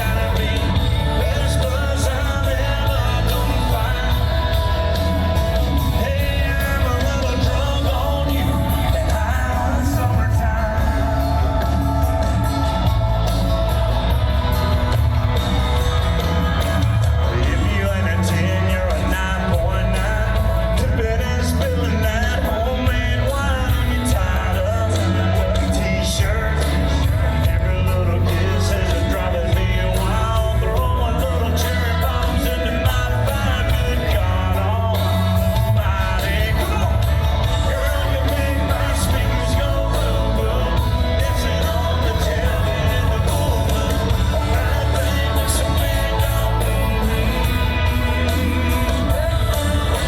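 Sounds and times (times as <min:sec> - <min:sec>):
crowd singing and shouting: 0:00.0 - 0:50.0
live rock band playing: 0:00.0 - 0:50.0.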